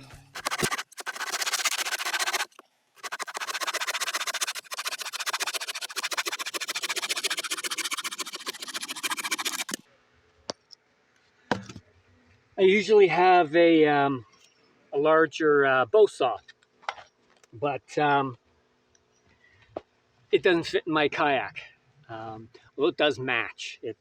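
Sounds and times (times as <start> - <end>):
saw cutting through branch: 0.4 - 9.8.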